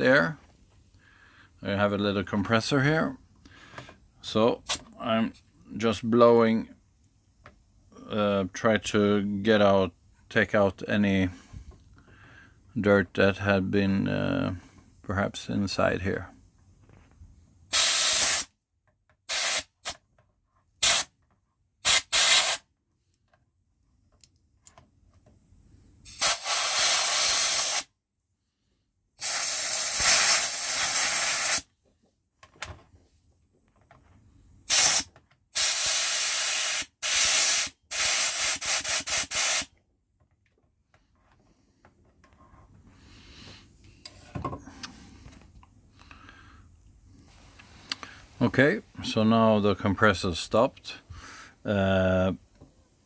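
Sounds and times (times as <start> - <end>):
compressed air hissing: 17.7 - 18.5, 19.3 - 20.0, 20.8 - 21.1, 21.8 - 22.6, 26.0 - 27.9, 29.2 - 31.7, 34.6 - 39.7.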